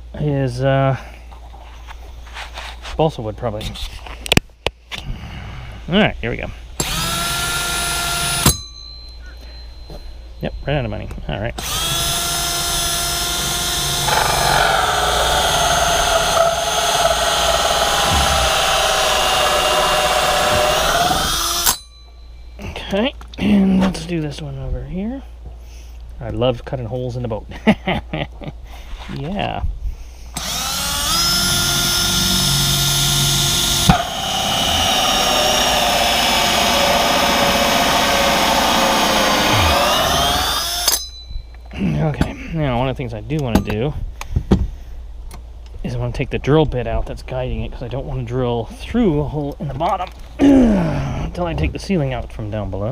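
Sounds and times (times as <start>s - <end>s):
power drill hole saw cutting: 6.8s - 8.7s, 11.6s - 22.0s, 30.4s - 41.2s.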